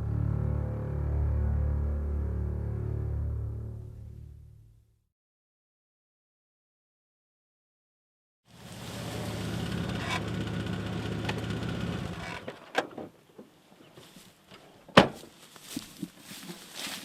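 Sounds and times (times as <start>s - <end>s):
engine running: 8.5s - 12.6s.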